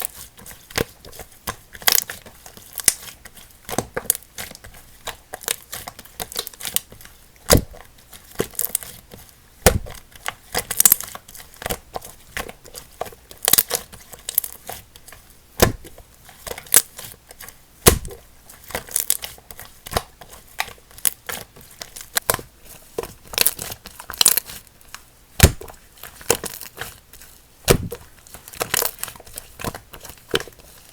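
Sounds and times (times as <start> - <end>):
slime crackling and popping: 0.0 - 9.0, 9.6 - 24.6, 25.4 - 30.6.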